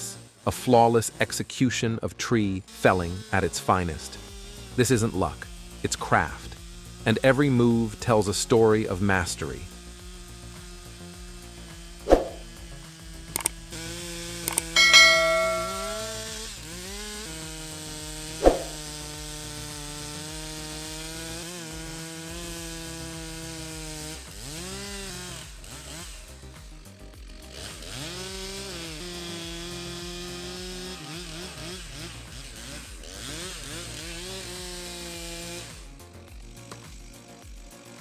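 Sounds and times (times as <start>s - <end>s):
chainsaw revving while cutting: 0.0s - 1.7s, 2.6s - 38.0s.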